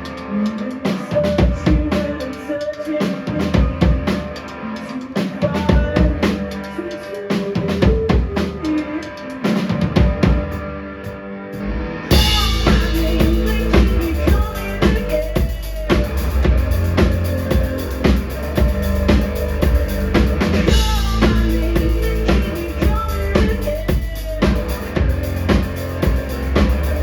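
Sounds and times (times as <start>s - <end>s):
drum kit beat: 0.0s - 11.2s, 12.1s - 27.0s
live rock band playing: 12.1s - 27.0s.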